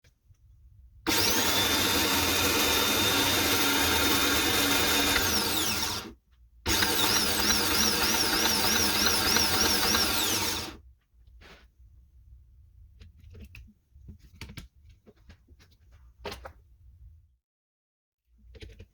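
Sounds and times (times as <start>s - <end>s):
starter motor whining: 1.1s - 6.1s, 6.7s - 10.8s.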